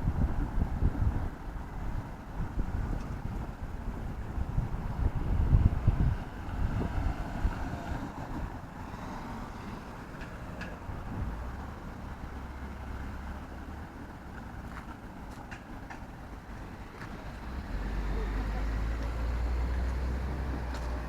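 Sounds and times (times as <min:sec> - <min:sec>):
wind buffeting microphone: 0:00.0 - 0:13.4
rumble of passing vehicles: 0:00.0 - 0:21.0.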